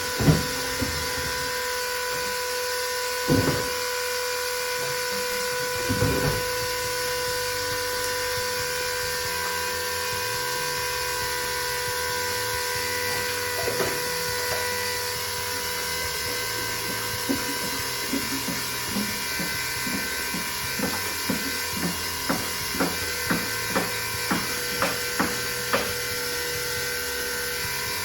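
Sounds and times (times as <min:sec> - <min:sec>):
electric pump motor whine: 0:00.0 - 0:28.0.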